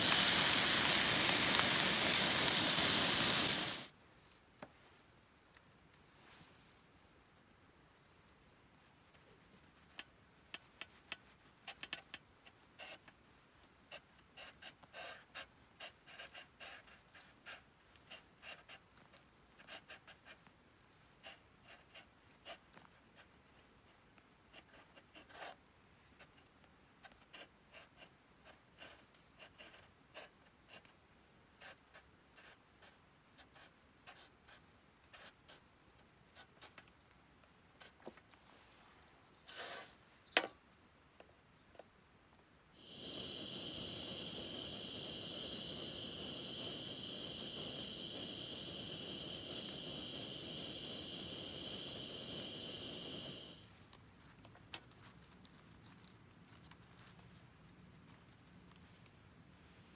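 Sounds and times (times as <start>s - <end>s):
faint small clicks and taps: 9.1s - 13.2s, 53.8s - 57.5s.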